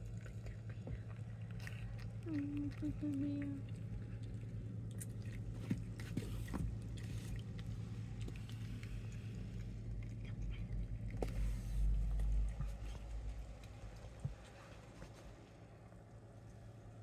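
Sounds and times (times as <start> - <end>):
cats chewing food: 0.0 - 17.0
low rumble: 0.0 - 17.0
steady low hum: 0.0 - 17.0.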